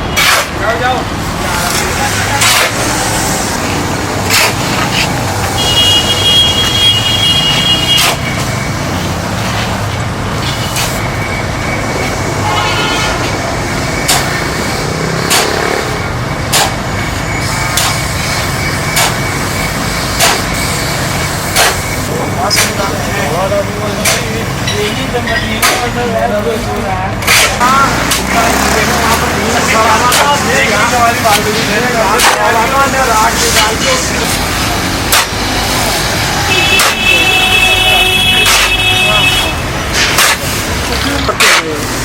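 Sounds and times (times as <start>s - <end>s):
engine rumble: 0.0s - 42.0s
high horn-like tone: 5.6s - 8.2s, 12.3s - 13.3s
sharp knocks: 14.0s - 14.5s, 15.2s - 15.9s, 16.5s - 16.9s, 20.1s - 20.6s.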